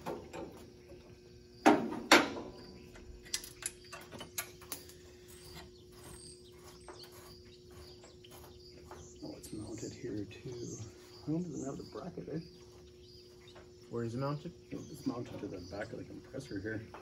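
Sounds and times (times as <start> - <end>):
faint steady hum: 0.0 - 17.0
sharp metallic knocks: 1.6 - 2.6.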